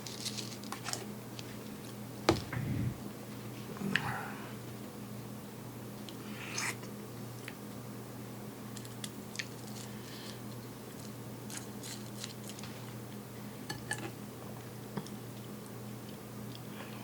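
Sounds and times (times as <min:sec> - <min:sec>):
steady low hum: 0:01.7 - 0:06.3.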